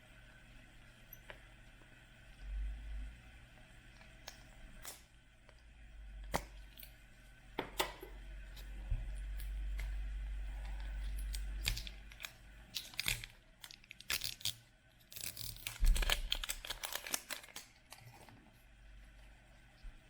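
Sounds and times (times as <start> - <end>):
packaging tearing and crinkling: 11.3 - 18.3.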